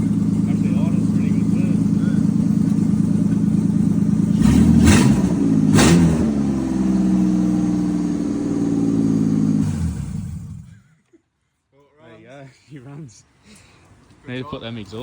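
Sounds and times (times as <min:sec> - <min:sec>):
sharp engine bangs: 0:00.0 - 0:10.7
car engine revving: 0:00.0 - 0:10.8.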